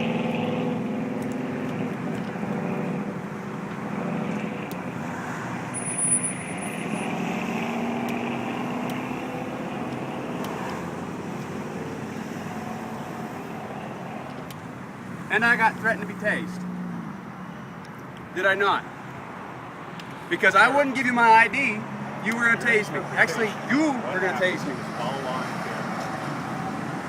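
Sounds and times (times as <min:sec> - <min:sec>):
road traffic passing: 0:00.0 - 0:27.0.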